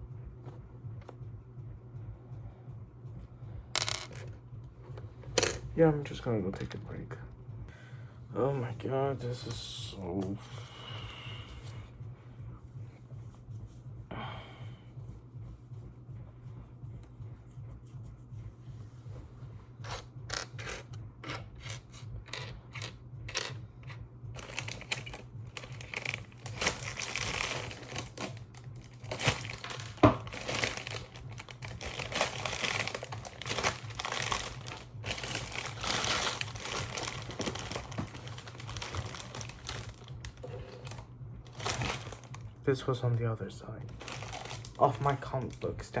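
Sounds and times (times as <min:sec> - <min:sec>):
rustling and crinkling: 0:21.9 - 0:42.4, 0:43.9 - 0:45.8.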